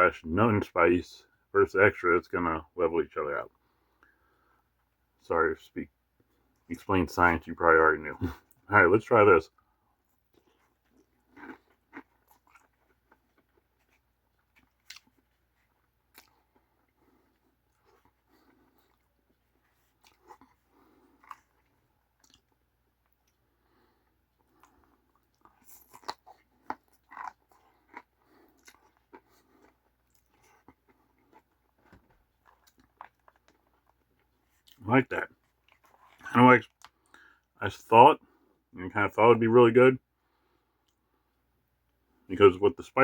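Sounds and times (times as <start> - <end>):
chewing noodles: 10.2 - 34.8
small crunches: 10.3 - 23.4, 24.4 - 34.8.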